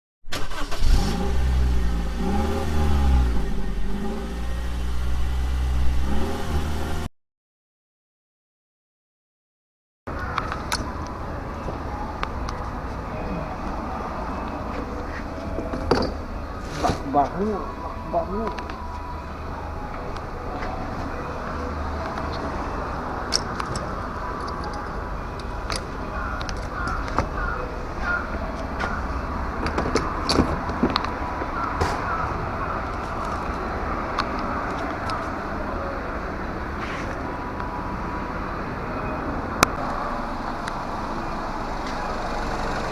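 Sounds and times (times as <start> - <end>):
car engine revving: 0.3 - 7.1
car engine idling: 22.9 - 33.7, 40.2 - 42.9.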